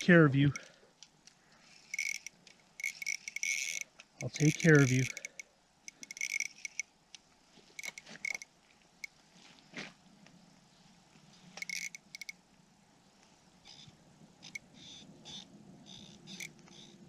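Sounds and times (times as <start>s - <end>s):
fishing reel clicking: 1.6s - 6.9s, 7.8s - 8.5s, 11.6s - 12.4s, 13.6s - 17.0s
soft scraping and rustling: 7.3s - 11.9s.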